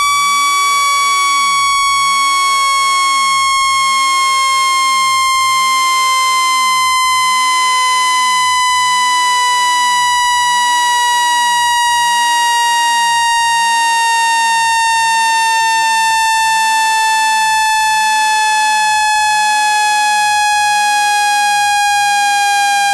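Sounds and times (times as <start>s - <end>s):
buzzy electronic tone sliding down: 0.0s - 22.9s.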